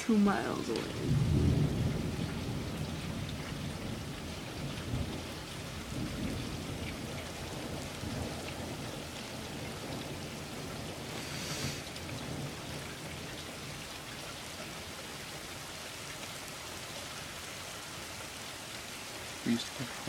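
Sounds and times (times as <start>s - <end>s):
thunder rumbling: 0.0s - 15.4s
steady rain: 0.0s - 20.0s.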